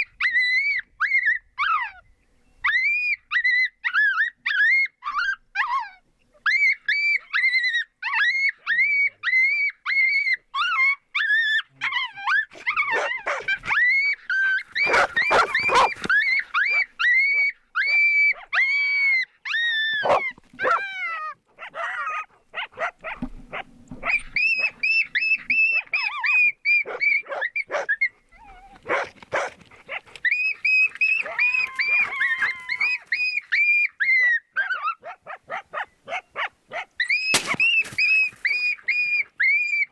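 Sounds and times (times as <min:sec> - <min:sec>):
dogs yipping: 0:09.9 - 0:39.9
dogs barking harshly: 0:12.8 - 0:13.7, 0:14.7 - 0:16.8, 0:20.0 - 0:20.8, 0:28.9 - 0:30.0.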